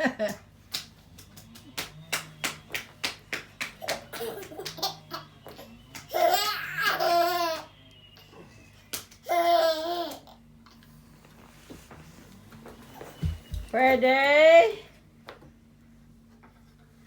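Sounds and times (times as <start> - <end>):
baby laughing: 3.8 - 7.7, 9.2 - 10.4.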